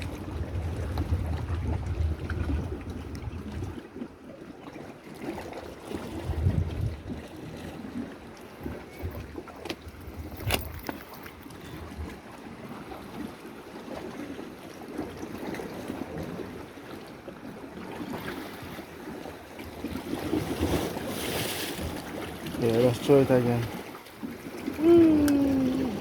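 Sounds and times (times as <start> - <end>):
wind on microphone: 0.0 - 3.8, 6.1 - 7.3, 24.7 - 26.0
sea water washing against rocks: 4.8 - 26.0.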